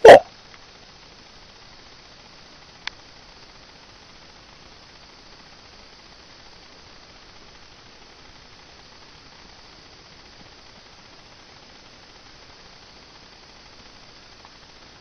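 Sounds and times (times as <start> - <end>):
faint hiss and hum: 0.0 - 15.0.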